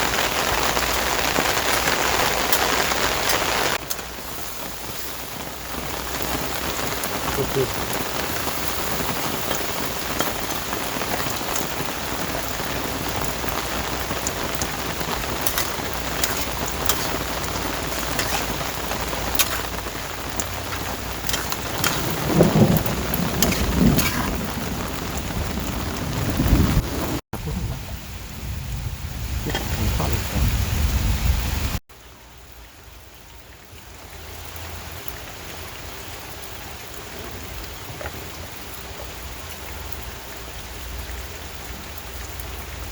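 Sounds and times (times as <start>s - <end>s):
heavy rain falling: 0.0s - 42.9s
rolling thunder: 18.7s - 31.8s.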